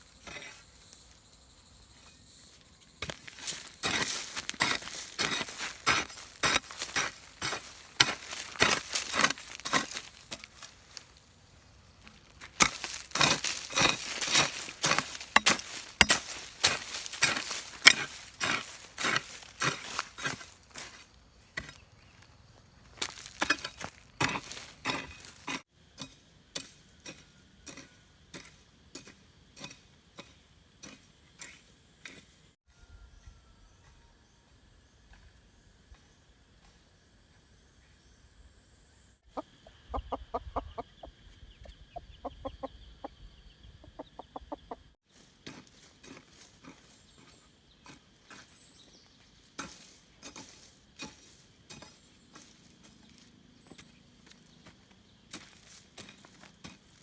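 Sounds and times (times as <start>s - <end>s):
chopping strokes: 12.5s - 21.0s.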